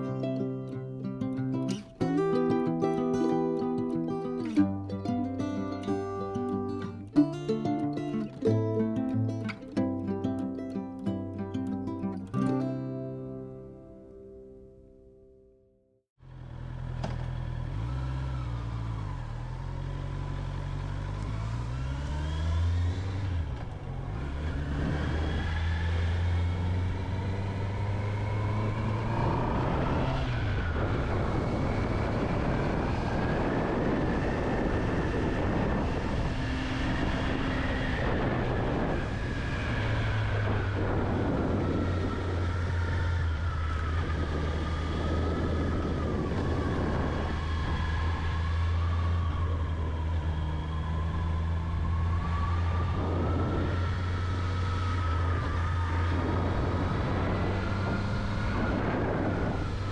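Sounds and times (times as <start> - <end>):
motorcycle engine accelerating: 16.2 - 59.9
wind noise: 22.5 - 59.9.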